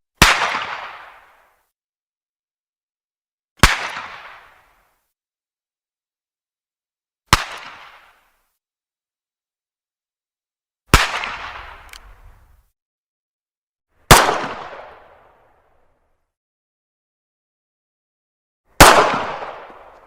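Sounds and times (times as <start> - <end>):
pistol shots echoing: 14.1 - 15.0, 18.8 - 19.9.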